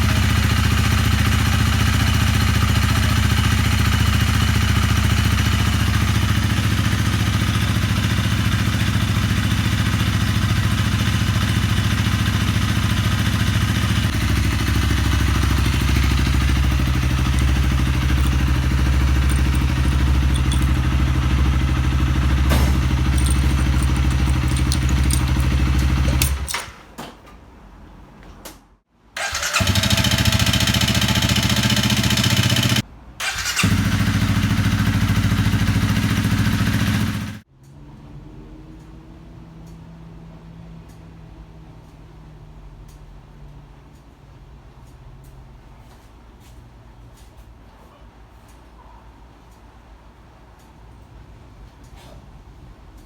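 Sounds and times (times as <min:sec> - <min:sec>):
motorcycle engine idling: 0:00.0 - 0:26.5.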